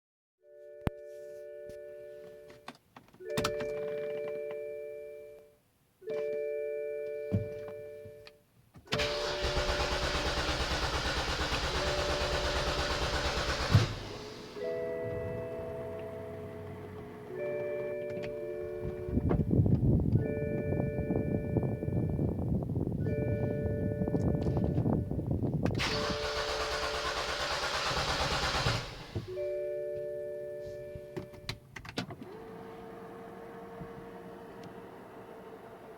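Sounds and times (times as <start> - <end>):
car starter cranking engine: 8.9 - 17.5, 25.6 - 29.4
steady electronic tones: 14.3 - 25.5.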